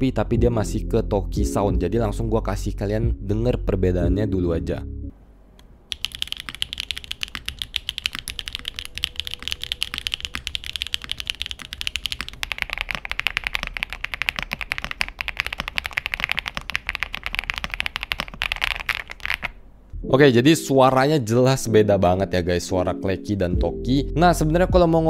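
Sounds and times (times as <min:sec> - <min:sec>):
fast typing on mechanical keyboard: 0:05.9 - 0:19.6.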